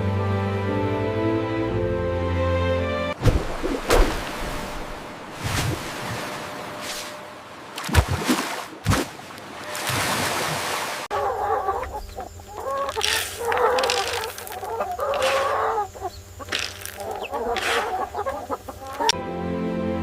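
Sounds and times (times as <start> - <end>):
soft music: 0.0 - 3.2, 19.1 - 20.0
chickens clucking: 11.1 - 19.2.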